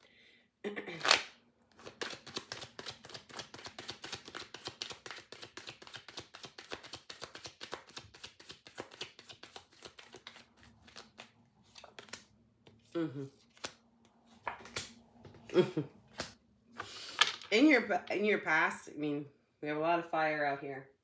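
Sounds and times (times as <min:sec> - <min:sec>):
cards being shuffled: 0:01.0 - 0:15.0, 0:16.2 - 0:17.5.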